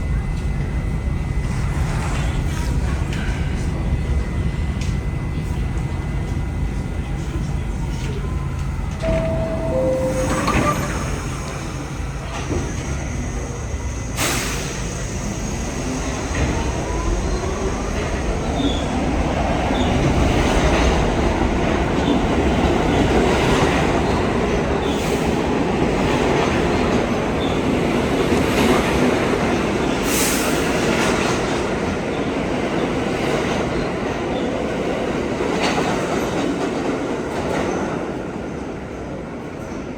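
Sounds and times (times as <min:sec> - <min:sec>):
rumbling wheel and rail noise: 0:00.0 - 0:39.9
subway train motors whining: 0:00.0 - 0:39.9.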